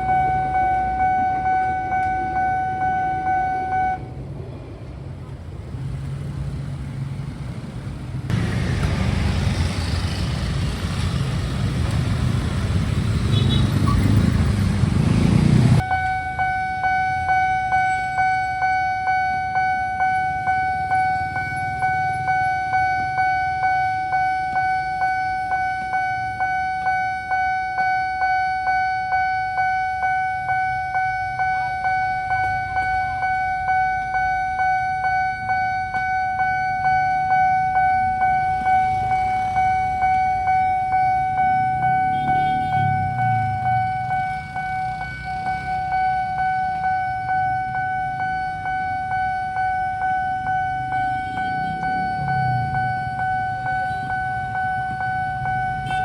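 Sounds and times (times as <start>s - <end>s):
level crossing warning alarm: 0.0s - 4.1s, 8.3s - 56.0s
loud rumbling noise: 5.4s - 15.8s.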